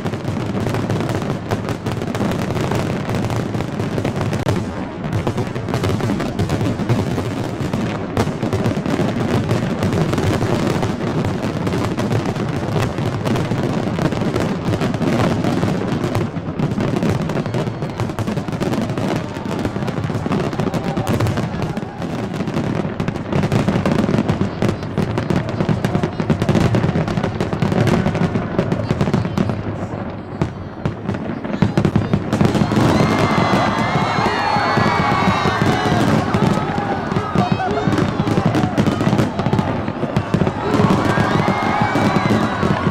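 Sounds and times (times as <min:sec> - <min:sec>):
fireworks booms and crackling: 0:00.0 - 0:42.9.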